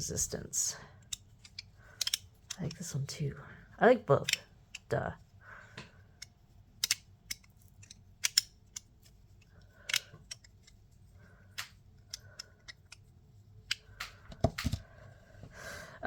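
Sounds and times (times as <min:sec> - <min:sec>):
fidget toy clicking and snapping: 0:01.0 - 0:02.9, 0:04.2 - 0:04.9, 0:05.7 - 0:10.8, 0:11.4 - 0:14.8.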